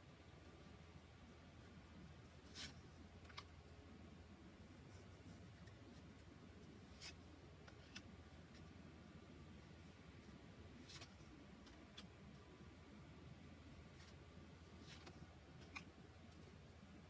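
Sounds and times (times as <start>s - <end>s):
cards swishing and tapping: 10.8s - 12.4s, 13.9s - 16.6s.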